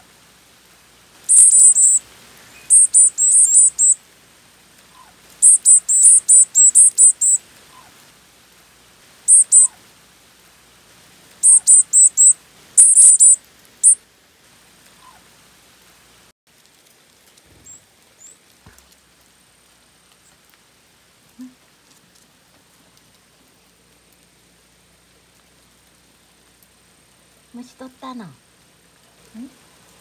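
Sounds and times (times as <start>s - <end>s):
birds calling high notes: 1.3s - 2.0s, 2.6s - 4.0s, 5.4s - 7.4s, 9.3s - 9.7s, 11.4s - 14.0s.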